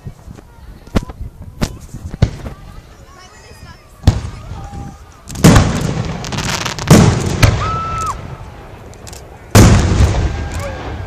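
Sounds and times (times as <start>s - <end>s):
crackling fireworks tail: 0.0s - 11.0s
fireworks booming: 1.6s - 2.7s, 4.0s - 8.9s, 9.5s - 11.0s.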